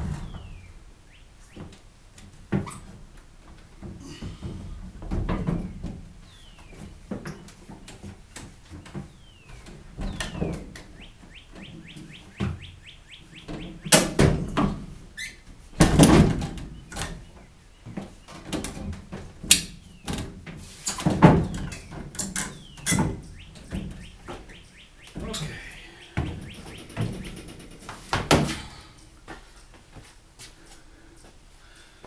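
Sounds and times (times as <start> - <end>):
knocks and clatters of hand work: 1.6 - 10.9, 15.8 - 25.3.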